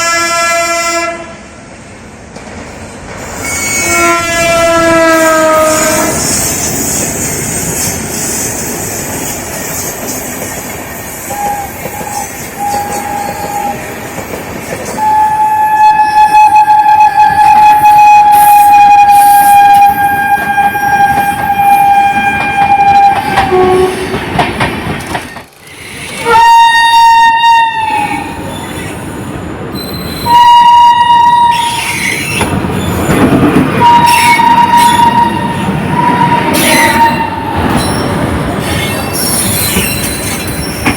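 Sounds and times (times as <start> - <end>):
locomotive horn blasts: 0.0 - 1.4, 3.4 - 6.4, 11.3 - 13.8, 15.0 - 24.0, 26.2 - 28.4, 30.2 - 31.9, 33.8 - 37.7
moving train rumbling and rattling: 0.0 - 40.9.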